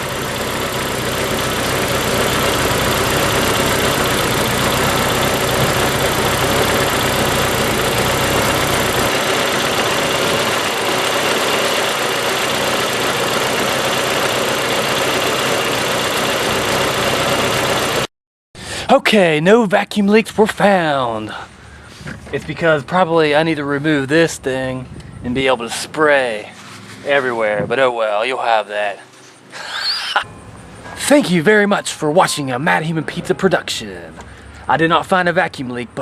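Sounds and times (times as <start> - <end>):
car engine idling: 0.0 - 18.1, 28.3 - 34.7.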